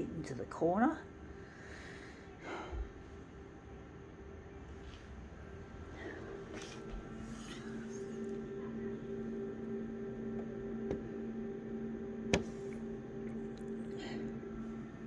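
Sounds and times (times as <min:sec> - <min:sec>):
scanner motor hum: 0:03.2 - 0:15.0.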